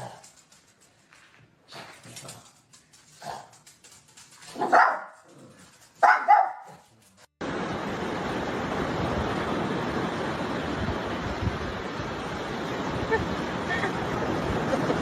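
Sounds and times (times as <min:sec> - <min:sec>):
steady rushing noise: 0:07.4 - 0:15.0.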